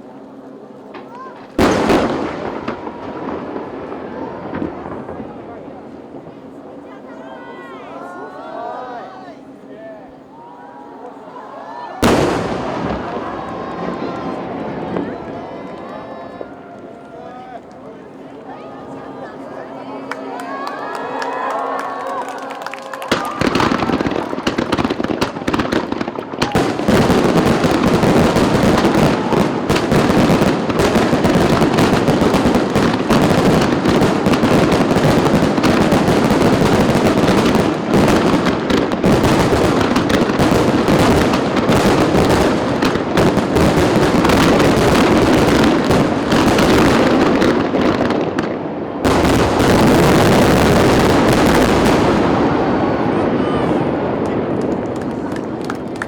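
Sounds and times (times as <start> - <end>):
fireworks bangs and crackle: 0.0 - 7.1, 12.0 - 17.8, 22.4 - 56.0.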